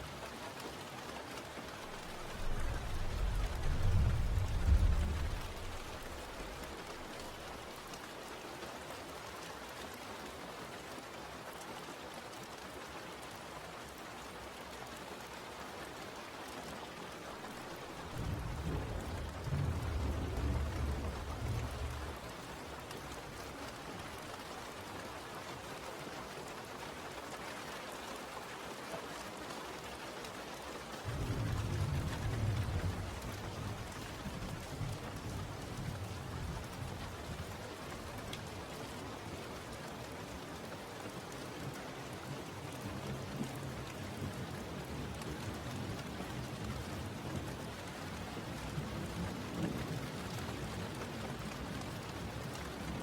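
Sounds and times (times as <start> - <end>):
steady rain hiss: 0.0 - 53.0
low rumble of thunder: 1.9 - 7.8, 17.5 - 24.3, 31.0 - 38.7.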